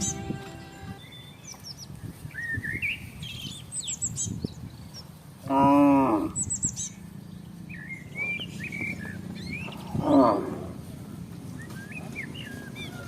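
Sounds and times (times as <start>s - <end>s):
small birds chirping: 0.0s - 5.3s, 6.2s - 13.0s
cattle mooing: 5.5s - 6.4s, 9.9s - 10.8s.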